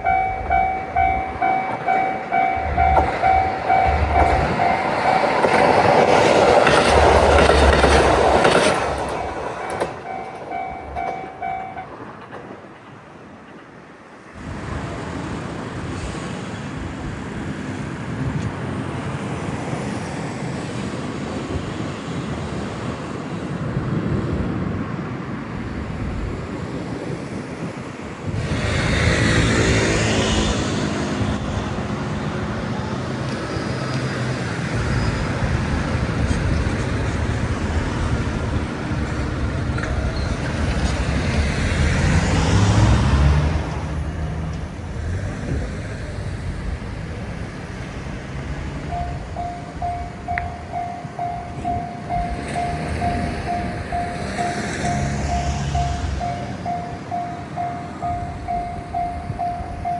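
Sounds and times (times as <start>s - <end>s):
close engine humming: 0.0s - 11.9s, 28.2s - 59.9s
road traffic passing: 0.0s - 59.9s.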